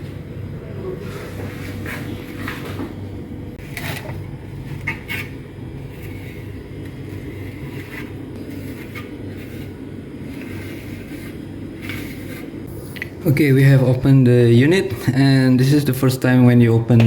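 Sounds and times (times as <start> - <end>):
steady low hum: 0.0 - 17.0
short scrapes and clicks: 7.1 - 12.6.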